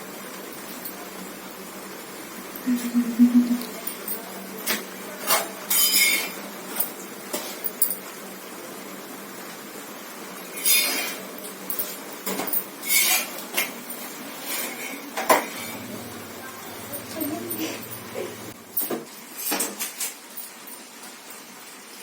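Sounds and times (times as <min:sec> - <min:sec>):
utensils clinking against pots: 0:03.6 - 0:08.1, 0:10.5 - 0:20.8.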